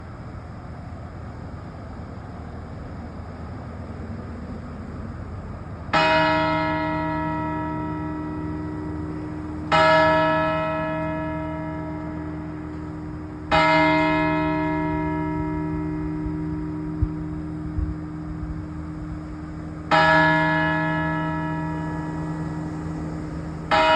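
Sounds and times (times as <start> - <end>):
steady low rumble: 0.0 - 23.9
church bell tolling: 5.9 - 23.9.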